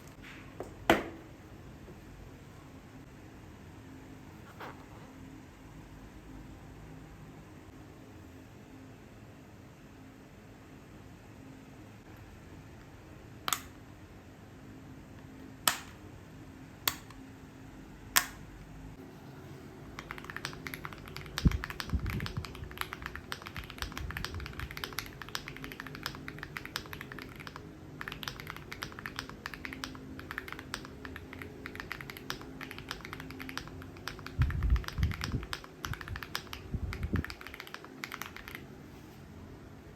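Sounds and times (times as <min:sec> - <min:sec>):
fast typing on keyboard: 0:19.9 - 0:38.6
keyboard key clicks: 0:20.0 - 0:38.6.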